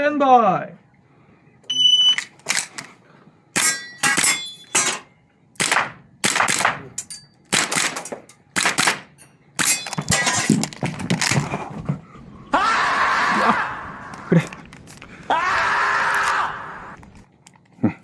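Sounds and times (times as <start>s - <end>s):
pellets ringing on steel targets: 3.6s - 5.2s, 6.9s - 7.5s, 9.1s - 10.5s
airsoft pistol shots: 5.6s - 6.9s, 8.6s - 9.7s.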